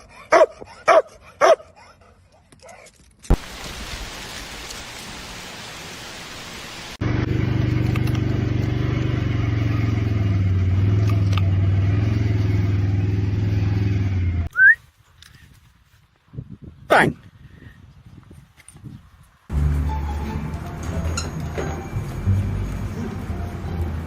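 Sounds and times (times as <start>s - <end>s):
engine droning: 7.0s - 14.5s, 19.5s - 24.0s.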